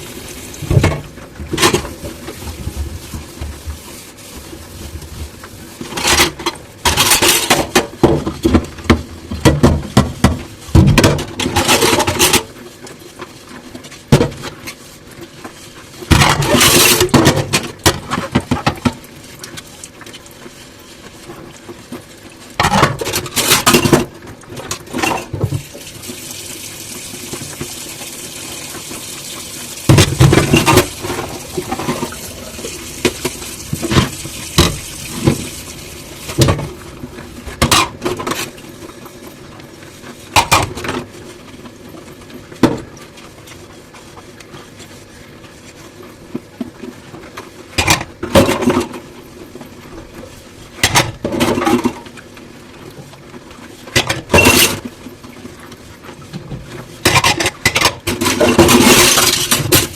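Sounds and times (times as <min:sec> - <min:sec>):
tap water running: 0:00.0 - 0:12.4, 0:16.1 - 0:40.8.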